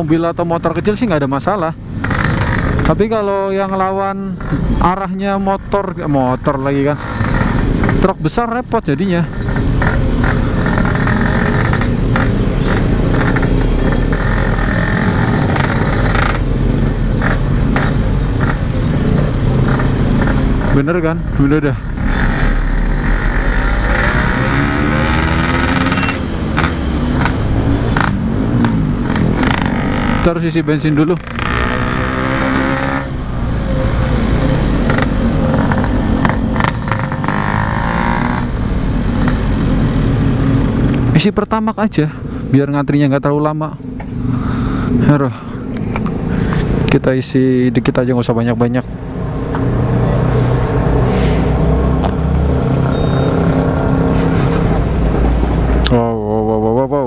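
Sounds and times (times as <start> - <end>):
road traffic: 0.0 - 57.0
two-stroke motorcycle running: 1.4 - 41.4, 52.0 - 56.6.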